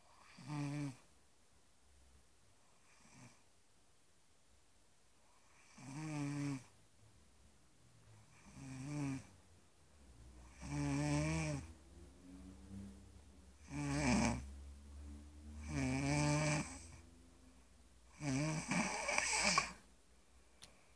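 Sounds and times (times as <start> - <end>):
person snoring: 8.3 - 9.3, 10.4 - 11.7, 13.6 - 14.5, 15.5 - 17.0, 18.1 - 19.8
quiet breathing: 10.0 - 20.9.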